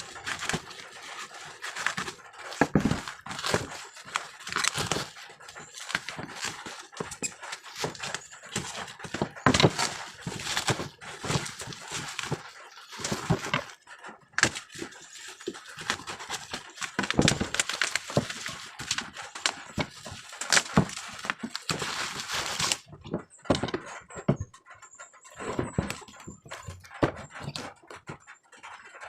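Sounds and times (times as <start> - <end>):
packaging rustling: 0.0 - 24.1, 25.3 - 28.1
box knocks and clicks: 0.0 - 24.6, 25.3 - 28.2.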